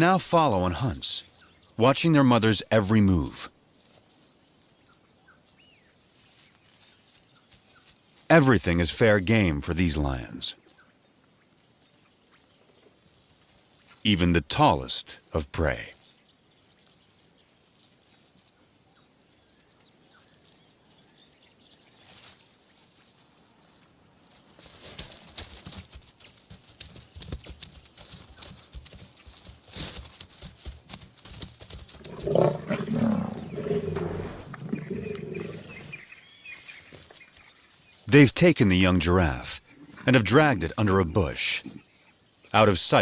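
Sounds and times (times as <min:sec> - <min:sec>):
faint high chirping: 0:31.4 - 0:38.1
lions growling: 0:32.0 - 0:36.1.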